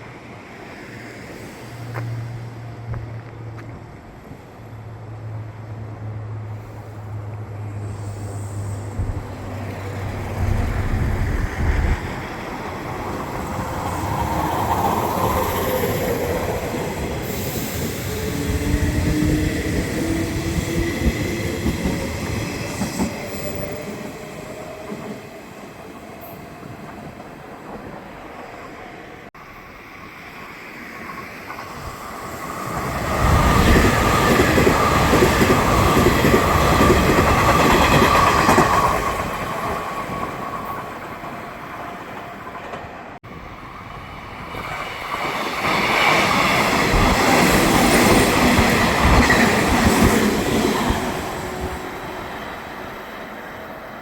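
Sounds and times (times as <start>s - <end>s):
train wheels clattering on rails: 31.2s - 41.0s, 44.5s - 51.9s.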